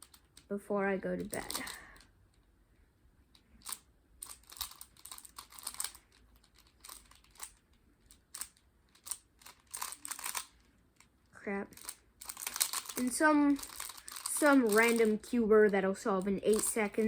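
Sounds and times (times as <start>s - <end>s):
puzzle cube layers clicking: 0.0s - 0.5s, 3.4s - 10.6s, 11.8s - 15.2s.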